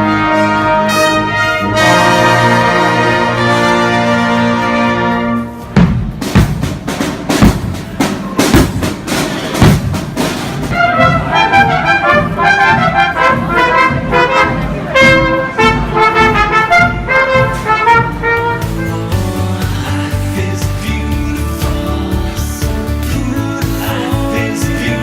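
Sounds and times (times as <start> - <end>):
brass section playing fast notes: 0.0 - 5.8, 7.0 - 19.8
heavy drum hits: 5.6 - 19.9.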